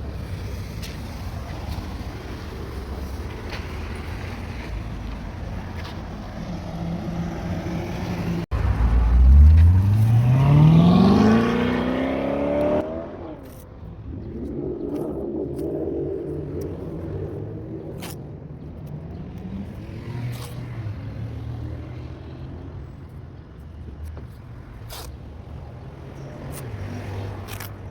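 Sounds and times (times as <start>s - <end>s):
car engine accelerating: 6.9s - 21.7s
steady low rumble: 13.3s - 19.9s.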